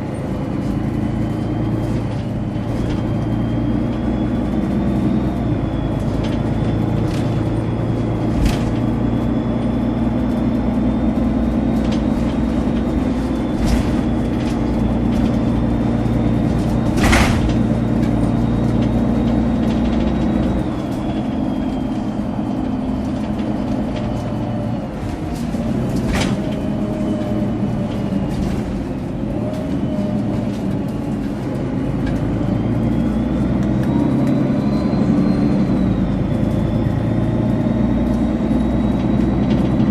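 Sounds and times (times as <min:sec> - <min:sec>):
bus diesel engine rumbling: 0:00.0 - 0:39.9
turbocharger whistle: 0:33.0 - 0:39.5.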